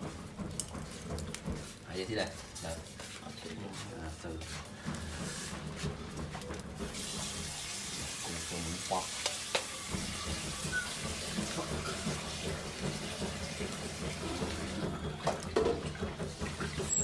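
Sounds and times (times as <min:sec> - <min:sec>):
water running: 0:06.3 - 0:17.0.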